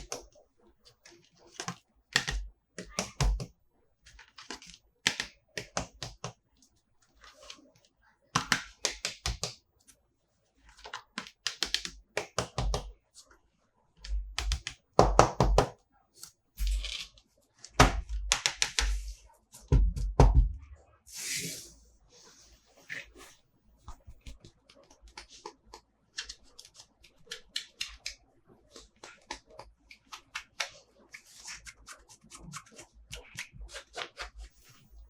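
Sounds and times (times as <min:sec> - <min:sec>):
heavier knocks: 0:19.7 - 0:20.7.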